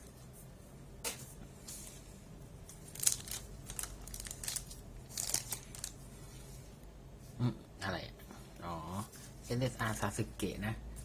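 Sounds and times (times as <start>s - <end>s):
cards and foil wrappers crinkling: 2.8s - 6.0s.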